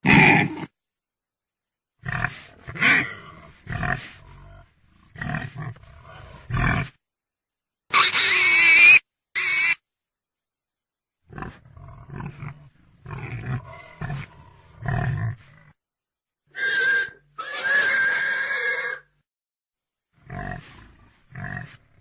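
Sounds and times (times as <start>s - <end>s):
pig grunting: 0.0s - 0.7s, 2.0s - 7.0s, 11.3s - 15.8s, 20.2s - 22.0s
pig squealing: 7.9s - 9.8s, 16.5s - 19.1s.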